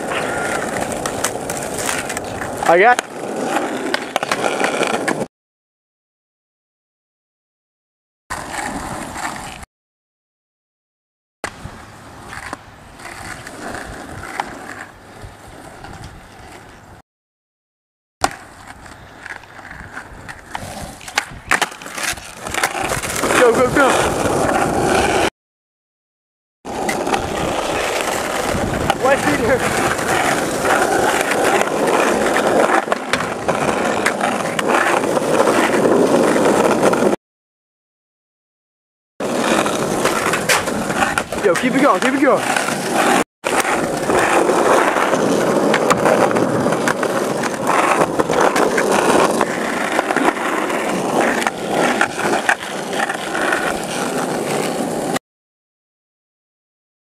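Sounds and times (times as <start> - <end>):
skateboard clacks: 0.0 - 5.3, 18.2 - 25.3, 26.7 - 37.2, 39.2 - 55.2
skateboard wheels rolling: 0.0 - 5.3, 8.3 - 9.7, 11.4 - 17.0, 18.2 - 25.3, 26.7 - 37.2, 39.2 - 55.2.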